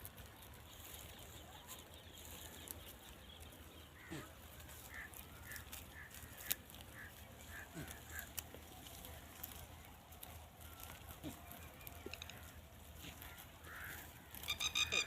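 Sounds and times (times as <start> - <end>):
fowl honking calls: 4.0 - 8.5, 12.0 - 15.0.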